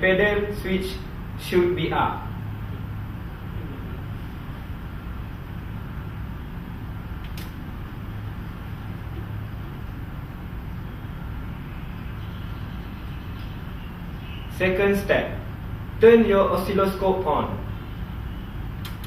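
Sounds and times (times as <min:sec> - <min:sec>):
low hum: 0:00.0 - 0:16.0
sharp click: 0:07.2 - 0:07.6, 0:18.8 - 0:19.0.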